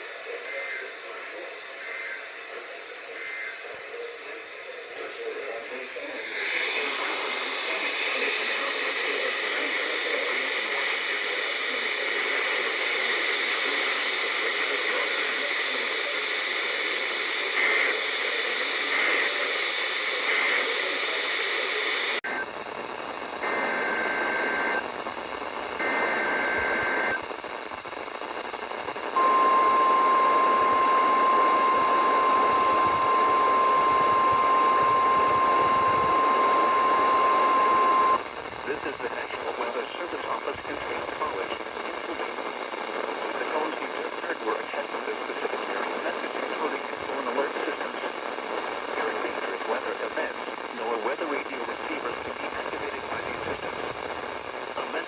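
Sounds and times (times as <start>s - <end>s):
radio static: 0.0s - 55.0s
screechy data bursts: 29.2s - 38.2s
steady warning alarm tone: 29.2s - 38.2s.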